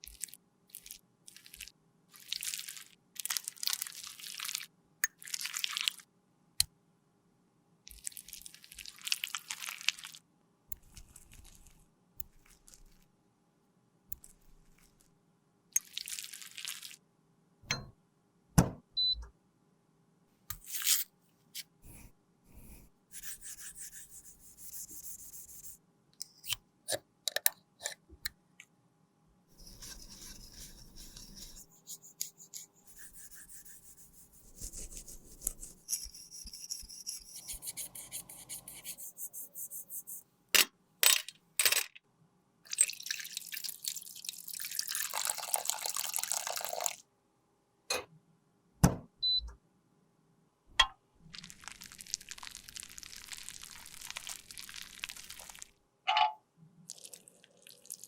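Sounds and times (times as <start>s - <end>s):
rubbing and scraping: 29.6s - 40.2s.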